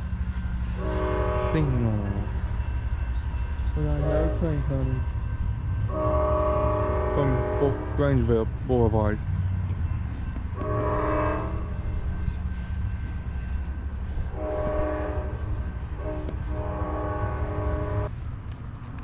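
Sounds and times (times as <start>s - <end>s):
locomotive air horn: 0.8s - 2.2s, 4.0s - 4.5s, 5.9s - 8.1s, 10.5s - 12.2s, 14.3s - 18.1s.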